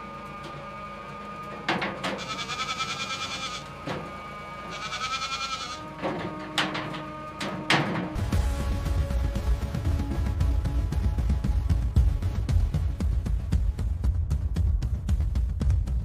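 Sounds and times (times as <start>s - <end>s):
goats bleating: 2.0s - 3.8s, 4.6s - 6.0s.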